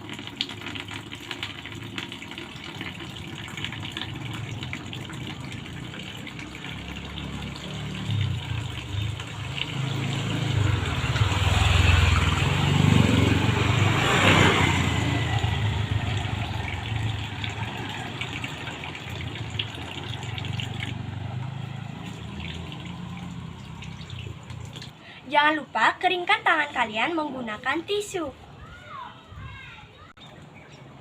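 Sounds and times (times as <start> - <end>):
tap water running over hands: 0.0 - 12.6, 15.3 - 25.0.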